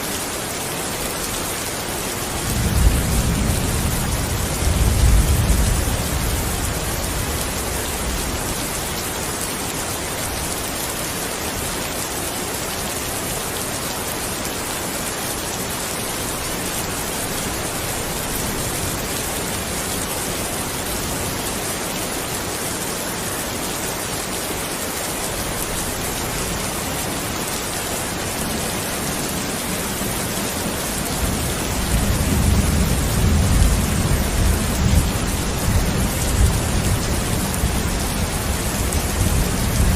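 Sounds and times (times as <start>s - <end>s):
steady rain: 0.0s - 39.9s
thunder rumbling: 2.3s - 8.7s, 31.1s - 39.9s.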